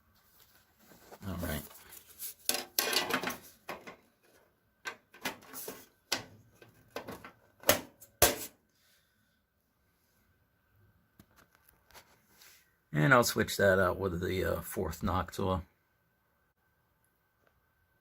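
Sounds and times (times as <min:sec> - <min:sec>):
clicks and knocks of pc case parts: 0:02.5 - 0:04.1, 0:04.8 - 0:08.6.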